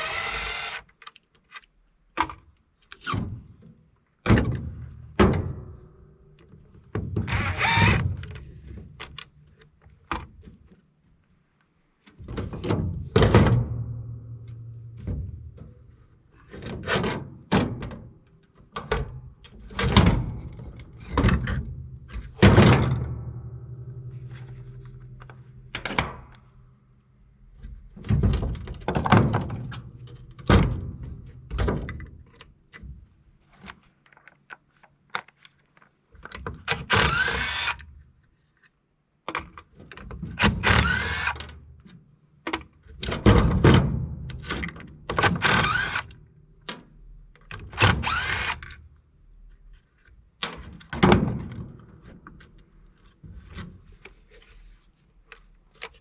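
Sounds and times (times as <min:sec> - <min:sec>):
power tool bursts: 0:00.0 - 0:00.9, 0:07.3 - 0:08.1, 0:36.9 - 0:37.8, 0:40.6 - 0:41.4, 0:45.3 - 0:46.1, 0:47.8 - 0:48.7.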